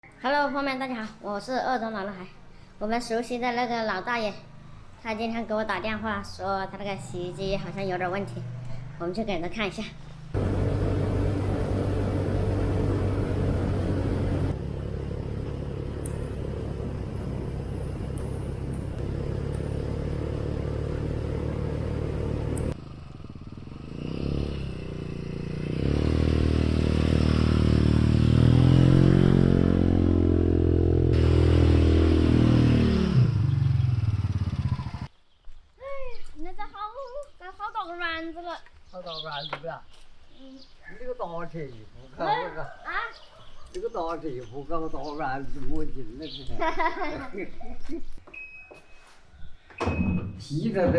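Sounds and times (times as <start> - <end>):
vehicle engine running: 10.4 - 35.1.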